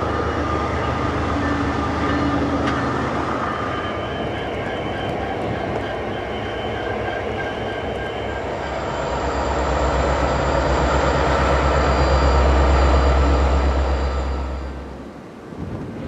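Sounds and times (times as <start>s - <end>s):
diesel locomotive engine rumble: 0.0s - 16.0s.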